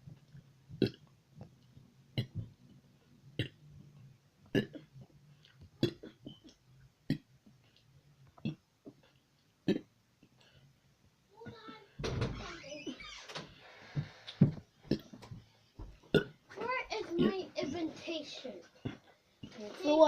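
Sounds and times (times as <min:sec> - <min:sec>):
short abrupt burps: 0:03.4 - 0:03.6, 0:04.5 - 0:05.0, 0:09.6 - 0:10.0, 0:14.9 - 0:15.2, 0:16.1 - 0:16.4.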